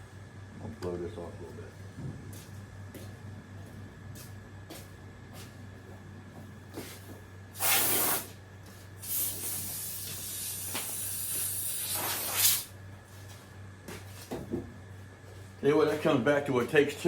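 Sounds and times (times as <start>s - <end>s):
air blow gun hissing: 7.6s - 8.3s, 9.0s - 12.7s.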